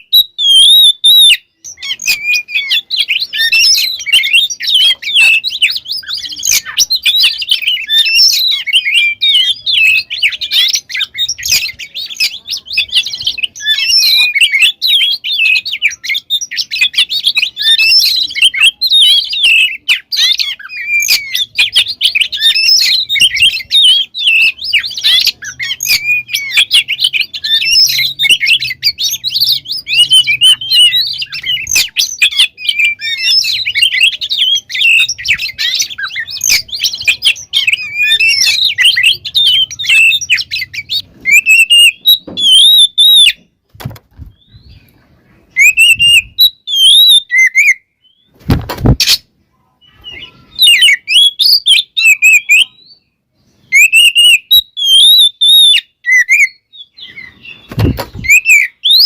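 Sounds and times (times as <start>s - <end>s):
bird singing: 0.0s - 48.4s, 49.0s - 59.0s.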